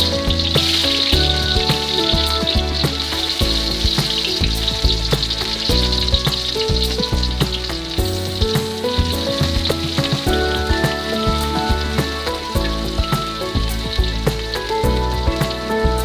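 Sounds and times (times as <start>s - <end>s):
food sizzling in hot oil: 0.0s - 15.9s
background music: 0.0s - 16.0s.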